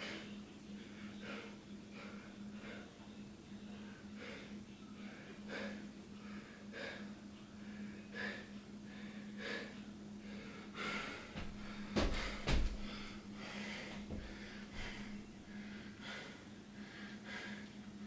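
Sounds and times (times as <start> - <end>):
steady low hum: 0.0 - 18.0
person breathing heavily: 0.9 - 3.0, 4.0 - 17.8
knock: 12.0 - 12.9.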